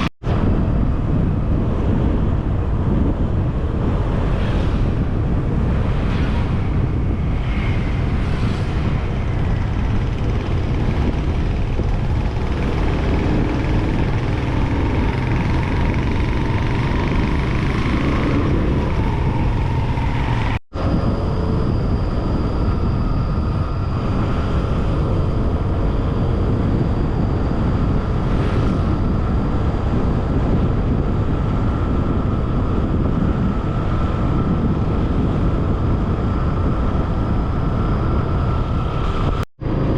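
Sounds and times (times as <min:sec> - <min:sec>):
wind rushing over microphone: 0:00.0 - 0:39.9
faint steady whine: 0:06.9 - 0:39.9
scooter engine running: 0:09.4 - 0:20.6.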